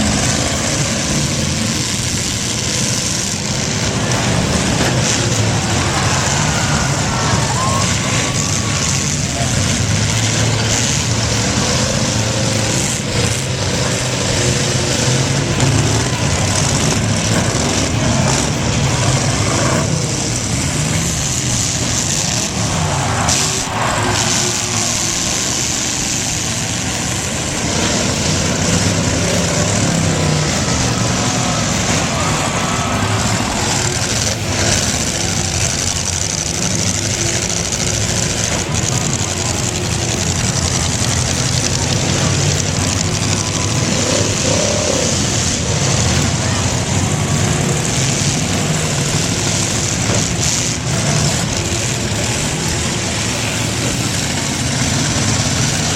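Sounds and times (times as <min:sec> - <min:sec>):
car engines revving: 0:00.0 - 0:55.9.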